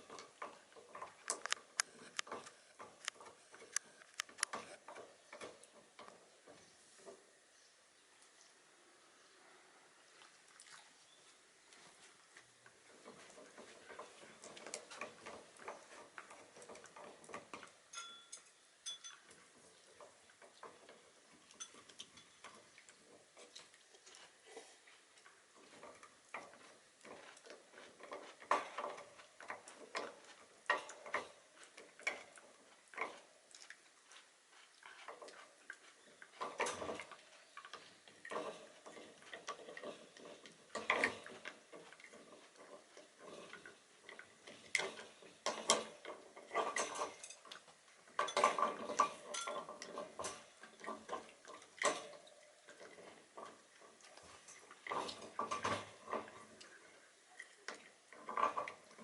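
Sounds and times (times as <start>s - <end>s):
dog gnawing on a hard chew: 20.5s - 56.7s.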